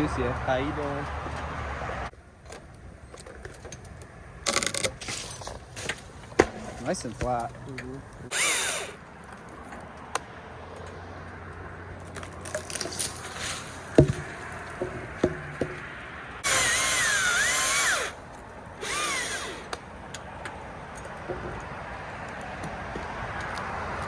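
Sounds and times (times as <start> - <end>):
chainsaw cutting: 8.2 - 9.1, 12.7 - 20.0
sharp knocks and clicks: 13.9 - 16.2, 19.6 - 23.7.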